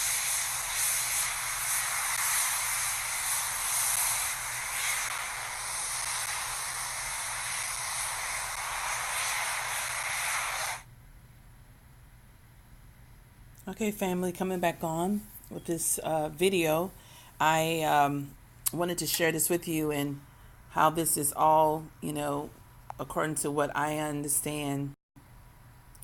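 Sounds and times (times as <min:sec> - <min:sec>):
jet turbines hissing rush: 0:00.0 - 0:10.9.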